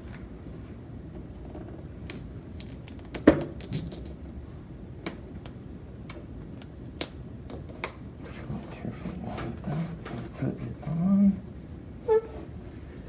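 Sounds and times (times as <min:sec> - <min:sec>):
low room hum: 0:00.0 - 0:13.0.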